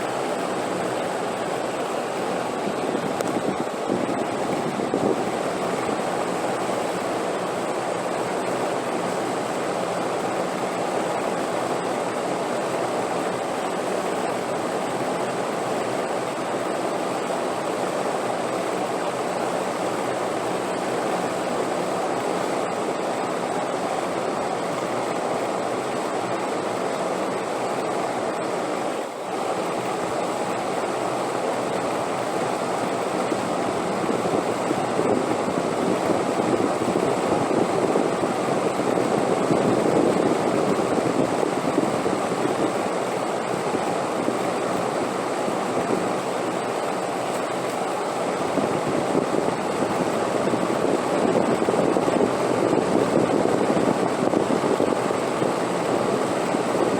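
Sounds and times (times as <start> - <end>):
wind blowing: 0.1 - 7.1.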